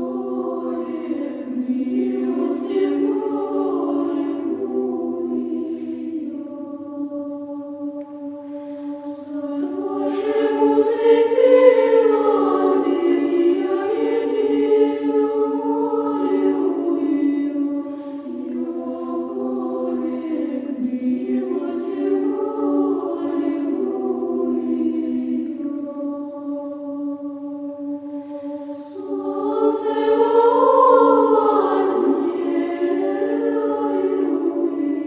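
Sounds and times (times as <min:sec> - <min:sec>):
choir singing a slow chant: 0:00.0 - 0:35.0.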